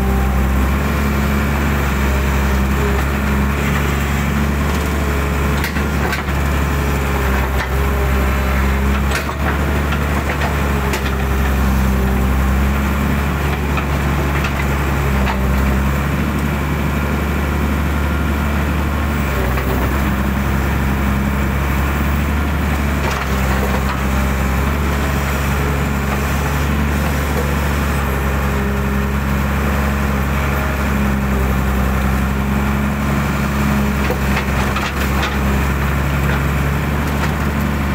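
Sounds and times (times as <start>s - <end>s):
excavator diesel engine: 0.0s - 37.9s.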